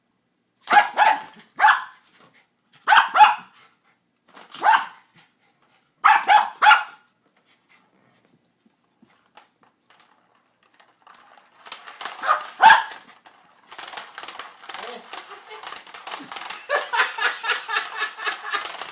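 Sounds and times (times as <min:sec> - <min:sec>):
dog barking: 0:00.7 - 0:02.0, 0:02.8 - 0:03.5, 0:04.6 - 0:05.0, 0:06.0 - 0:07.0, 0:12.2 - 0:12.9
scuffling and rattling: 0:09.0 - 0:18.9.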